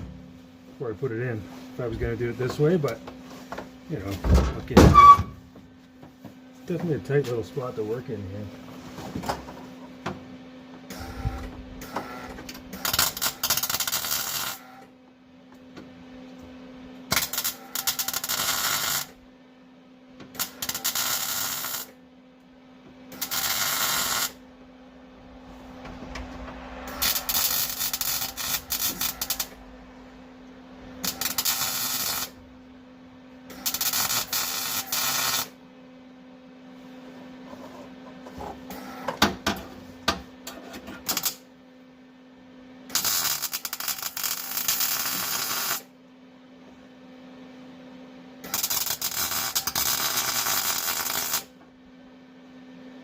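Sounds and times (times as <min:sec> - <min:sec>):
steady hum: 0:00.0 - 0:53.0
welding arc crackling: 0:12.8 - 0:14.6, 0:17.1 - 0:19.2, 0:20.4 - 0:22.0, 0:23.1 - 0:24.4, 0:26.9 - 0:29.6, 0:31.0 - 0:32.4, 0:33.5 - 0:35.6, 0:41.1 - 0:41.4, 0:42.9 - 0:45.9, 0:48.4 - 0:51.5.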